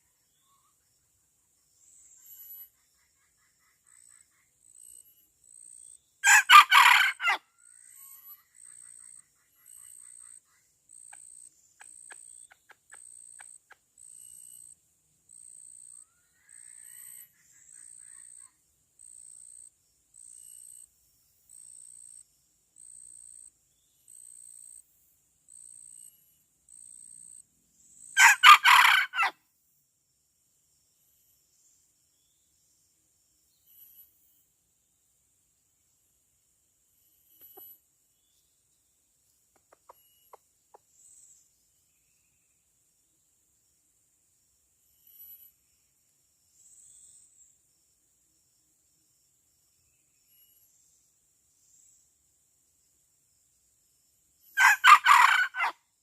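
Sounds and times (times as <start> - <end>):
high insect chirp: 0.0 - 29.4, 30.1 - 56.0
rooster crowing: 6.2 - 7.4, 28.2 - 29.4, 54.6 - 55.8.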